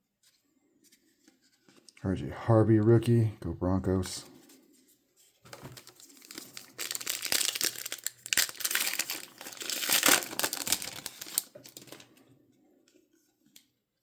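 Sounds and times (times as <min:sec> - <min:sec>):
card pack wrapper tearing: 0:05.7 - 0:12.0.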